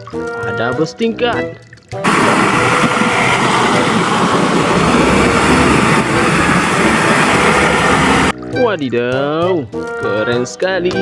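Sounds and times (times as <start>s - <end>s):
vehicle engine rumbling: 2.0s - 8.3s.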